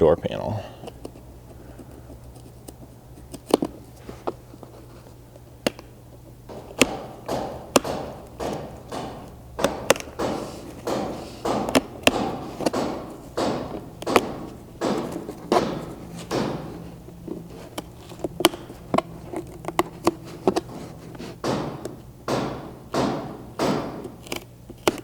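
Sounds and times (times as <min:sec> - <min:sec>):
sharp clicks and taps: 0:06.5 - 0:16.7
razor blade scraping cuts: 0:24.0 - 0:25.0.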